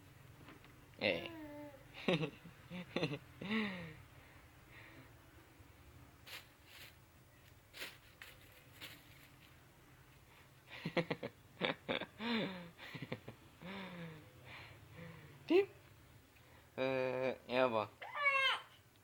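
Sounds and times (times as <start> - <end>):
person making short vocal sounds: 1.0 - 1.8.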